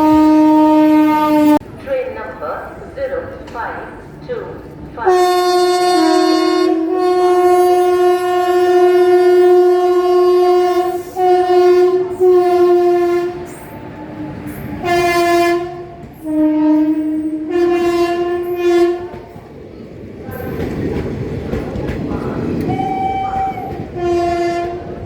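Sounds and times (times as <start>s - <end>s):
locomotive air horn blasts: 0.0s - 1.6s, 5.0s - 19.3s, 22.7s - 25.0s.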